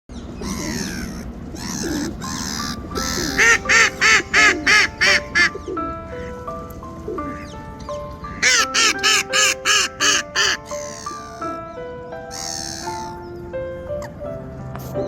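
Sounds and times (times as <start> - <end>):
ducks quacking: 0.4 - 5.6, 8.3 - 11.5
background music sustained notes: 0.4 - 15.0.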